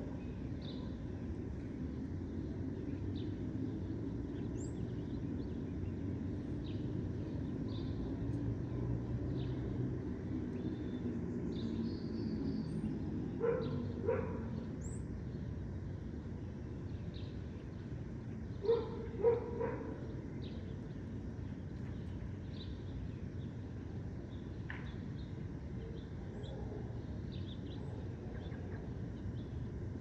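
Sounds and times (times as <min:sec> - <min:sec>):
low city rumble: 0:00.0 - 0:30.0
dog barking: 0:13.4 - 0:14.6, 0:18.6 - 0:20.0.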